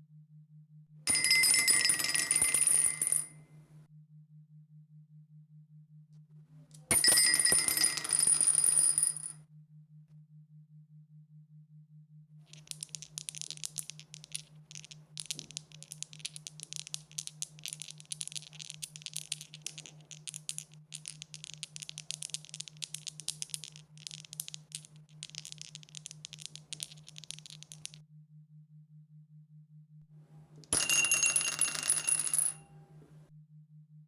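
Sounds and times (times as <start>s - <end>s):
dice rattling: 12.5s - 28.0s, 30.7s - 32.6s.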